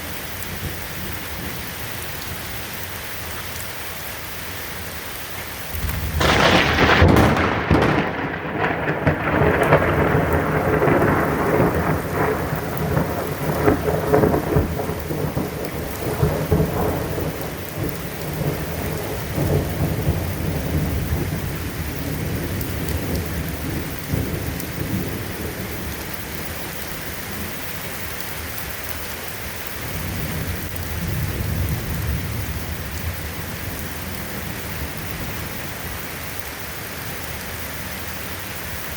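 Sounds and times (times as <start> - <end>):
steady rain: 0.0 - 38.9
thunderclap crack and rumble: 5.4 - 27.8, 29.6 - 36.4.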